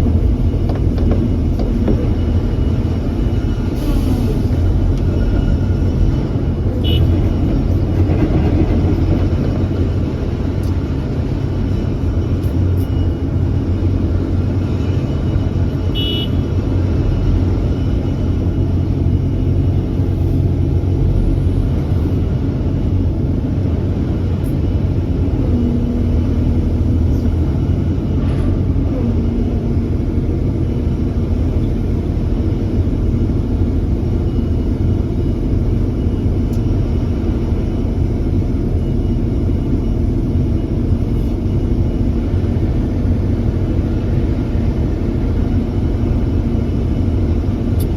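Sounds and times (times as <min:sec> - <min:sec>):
excavator diesel engine rumbling: 0:00.0 - 0:47.9.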